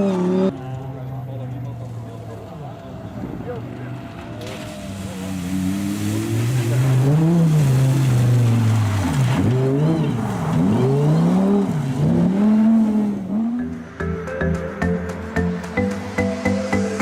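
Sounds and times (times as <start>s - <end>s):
music: 13.5s - 17.0s.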